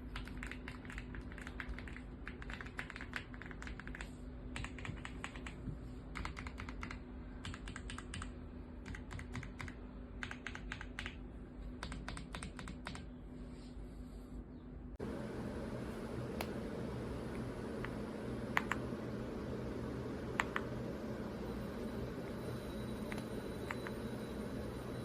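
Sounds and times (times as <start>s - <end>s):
mechanical keyboard typing: 0.0s - 11.2s, 11.8s - 13.1s.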